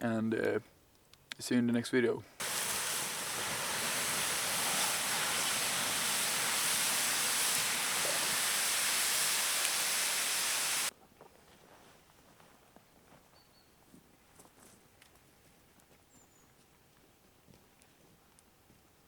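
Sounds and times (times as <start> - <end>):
steady rushing hiss: 2.4 - 10.9.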